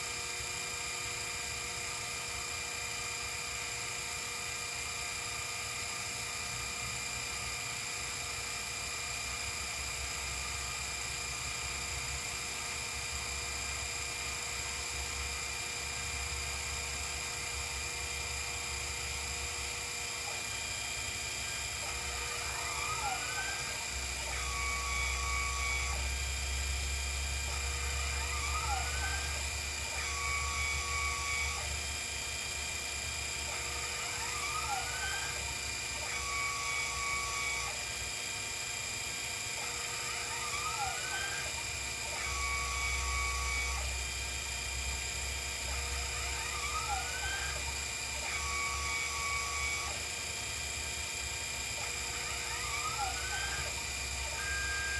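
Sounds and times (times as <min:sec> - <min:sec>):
cnc mill whining: 0:00.0 - 0:54.9
stepper motors sweeping in pitch: 0:20.2 - 0:26.2, 0:27.4 - 0:31.8, 0:39.5 - 0:44.0, 0:45.6 - 0:50.0, 0:51.7 - 0:54.9.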